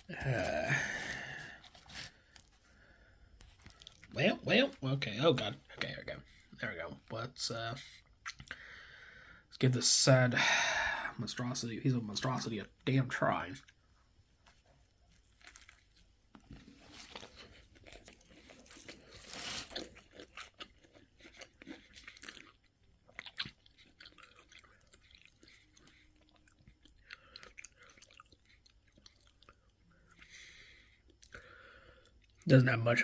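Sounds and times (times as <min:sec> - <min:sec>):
crunchy food being chewed: 0:03.4 - 0:04.8, 0:14.4 - 0:32.5.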